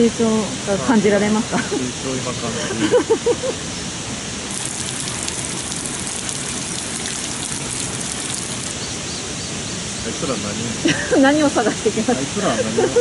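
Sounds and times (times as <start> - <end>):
dense patter of drops: 4.5 - 8.8
heavy rain falling: 4.5 - 8.8.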